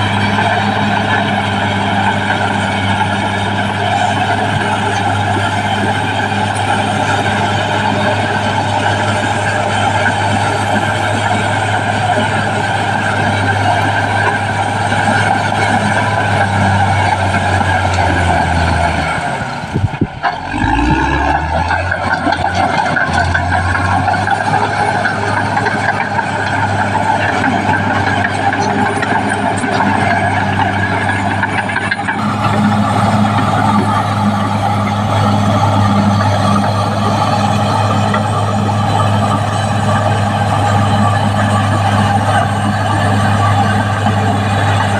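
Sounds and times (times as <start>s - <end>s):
bulldozer diesel engine running: 0.0s - 44.9s.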